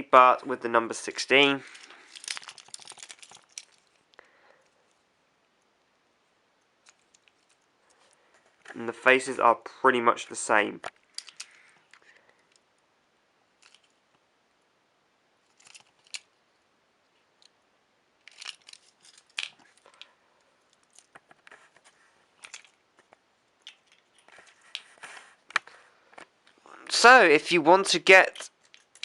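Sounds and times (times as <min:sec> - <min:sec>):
toy vehicles clicking and tapping: 0:11.2 - 0:11.5.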